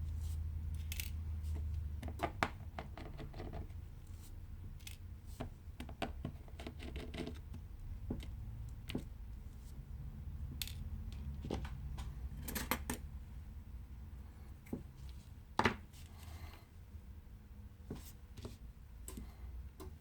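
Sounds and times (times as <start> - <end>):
low steady hum: 0.0 - 20.0
small tools clicking and scraping: 0.8 - 1.6.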